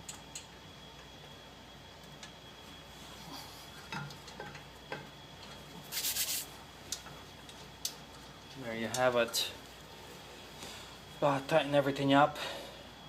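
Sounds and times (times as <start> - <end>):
clicks and knocks of tools: 3.9 - 5.6
short hissing rasp: 5.9 - 6.5.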